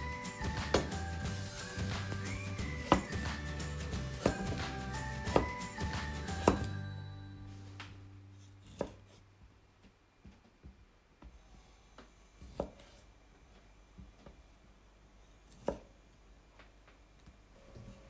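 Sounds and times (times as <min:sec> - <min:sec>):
background music: 0:00.0 - 0:08.3
knife chopping on cutting board: 0:00.6 - 0:01.0, 0:02.7 - 0:03.5, 0:04.1 - 0:06.8, 0:08.6 - 0:09.2, 0:12.4 - 0:13.0, 0:15.5 - 0:15.9.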